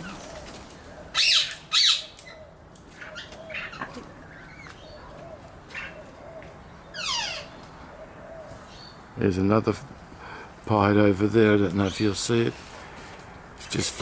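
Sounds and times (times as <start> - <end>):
birds squawking and calling: 0.0 - 9.6.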